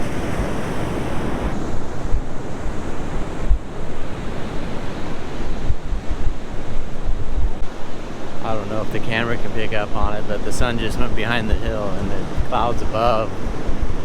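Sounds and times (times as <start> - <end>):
ocean surf washing on beach: 0.0 - 14.0
wind buffeting microphone: 0.0 - 14.0.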